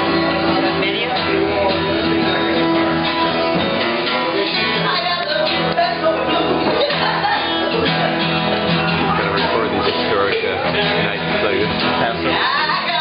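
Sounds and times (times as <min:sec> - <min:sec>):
person singing: 0:00.0 - 0:08.1, 0:12.1 - 0:13.0
guitar playing: 0:00.0 - 0:13.0.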